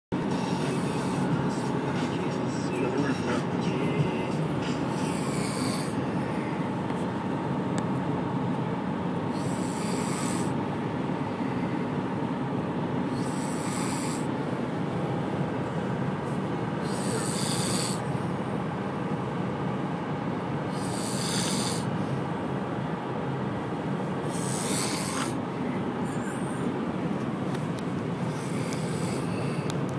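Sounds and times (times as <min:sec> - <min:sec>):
steady background rumble: 0:00.1 - 0:29.9
person snoring: 0:00.2 - 0:06.6, 0:09.3 - 0:10.6, 0:13.1 - 0:14.3, 0:16.8 - 0:18.1, 0:20.7 - 0:21.9, 0:24.3 - 0:25.4, 0:28.3 - 0:29.7.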